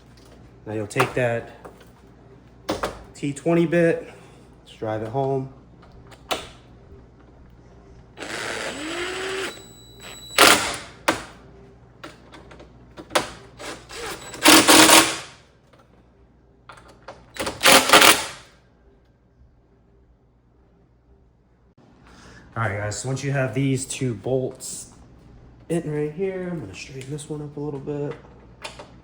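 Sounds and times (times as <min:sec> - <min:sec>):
power driver driving screws: 0:08.2 - 0:11.0, 0:13.6 - 0:15.3, 0:17.4 - 0:18.4.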